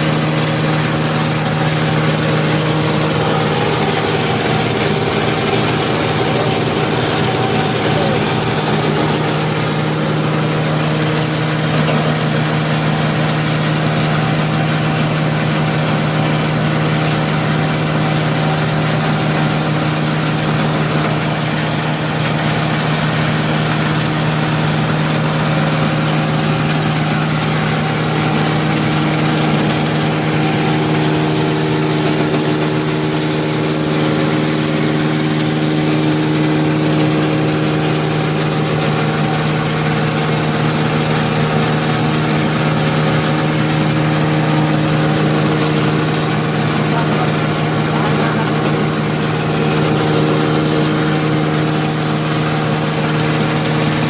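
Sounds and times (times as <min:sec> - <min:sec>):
grinding mill humming and hissing: 0:00.0 - 0:54.0.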